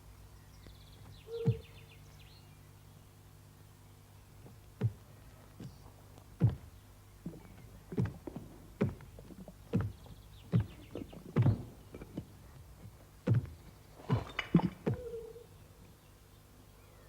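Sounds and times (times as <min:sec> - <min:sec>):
dull thumps and knocks: 0:01.0 - 0:01.7, 0:04.4 - 0:05.8, 0:06.4 - 0:15.1.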